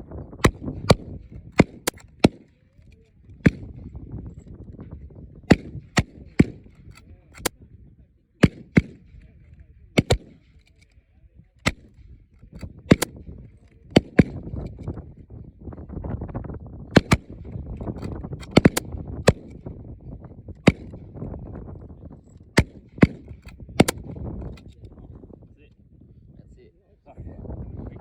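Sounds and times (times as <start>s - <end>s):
wind rumble on microphone: 0.0s - 28.0s
rifle shots: 0.4s - 2.5s, 3.4s - 3.9s, 5.5s - 7.6s, 8.4s - 9.2s, 10.0s - 10.6s, 11.6s - 12.0s, 12.6s - 13.2s, 13.9s - 14.8s, 17.0s - 19.7s, 20.6s - 21.0s, 22.6s - 24.7s.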